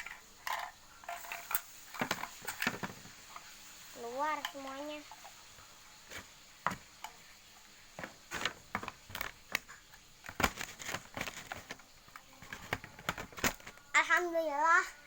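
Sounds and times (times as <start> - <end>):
plastic toy pieces clicking: 8.4 - 13.9.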